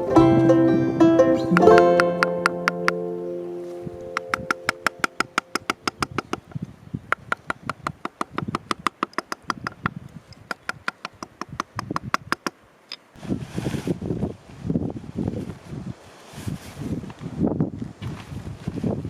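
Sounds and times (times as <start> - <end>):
mallet tapping a wood gouge: 1.4 - 3.0, 4.1 - 6.4, 7.1 - 12.6.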